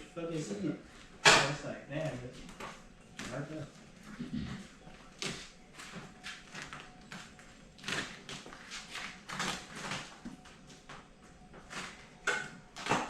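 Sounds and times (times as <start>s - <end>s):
vinyl film swishing and scraping: 2.1s - 13.0s.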